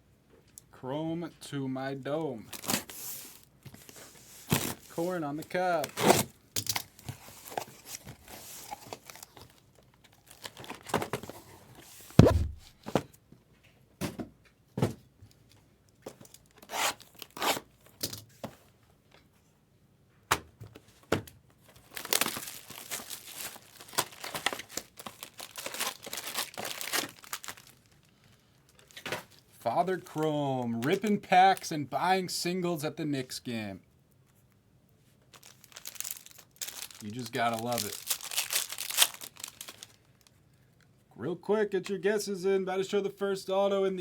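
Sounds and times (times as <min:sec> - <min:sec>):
card pack wrappers tearing: 0:02.5 - 0:03.5, 0:04.5 - 0:11.2, 0:21.7 - 0:28.1, 0:35.3 - 0:40.2
dull thump: 0:12.2 - 0:12.8.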